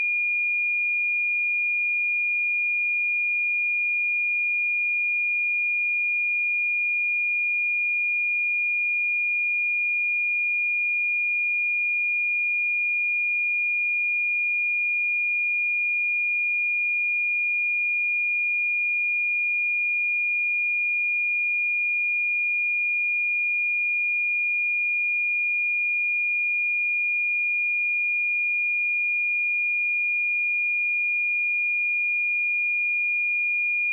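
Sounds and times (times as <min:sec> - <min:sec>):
high-pitched sine-wave test tone: 0:31.2 - 0:33.9.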